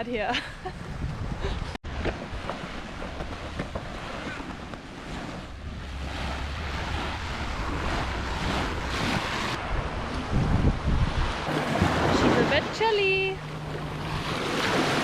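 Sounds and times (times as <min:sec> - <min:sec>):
wind buffeting microphone: 0:00.0 - 0:15.0
waves washing on beach: 0:11.1 - 0:15.0.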